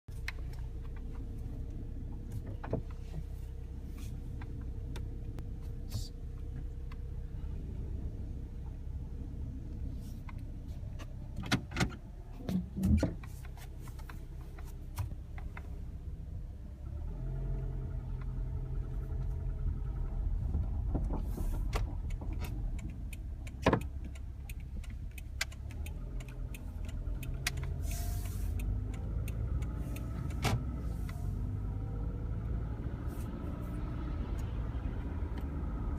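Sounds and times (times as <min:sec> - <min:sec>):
valvetrain ticking: 0:22.0 - 0:27.8.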